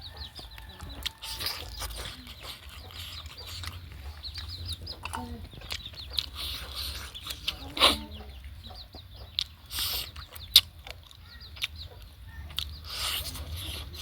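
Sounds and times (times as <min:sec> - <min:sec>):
chickens clucking and chirping: 0:00.0 - 0:14.0
person crunching food: 0:00.8 - 0:07.6, 0:12.5 - 0:14.0.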